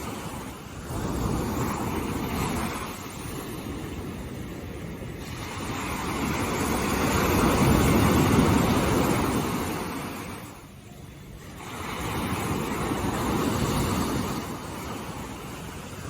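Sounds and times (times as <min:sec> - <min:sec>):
ocean surf breaking: 0:00.0 - 0:10.7, 0:11.3 - 0:16.0.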